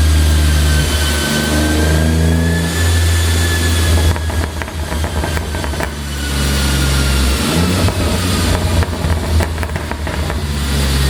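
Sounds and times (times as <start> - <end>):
car engine revving: 0.0 - 11.0
exhaust pops and crackles: 2.9 - 11.0.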